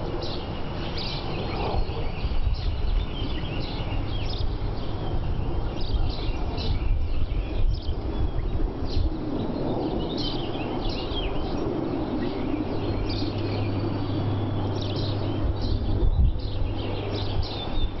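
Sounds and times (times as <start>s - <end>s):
songbirds chirping: 0.0s - 18.0s.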